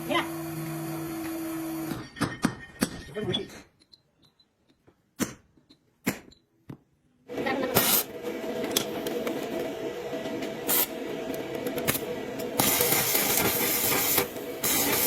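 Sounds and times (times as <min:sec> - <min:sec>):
workshop machine whirring: 0:07.3 - 0:15.0.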